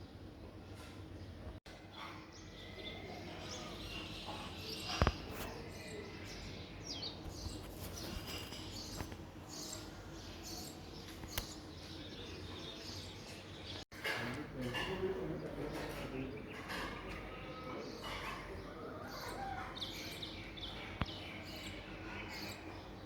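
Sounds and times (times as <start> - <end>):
birds chirping: 0.0 - 23.0
outdoor background noise: 0.0 - 23.0
sharp click: 11.2 - 11.6.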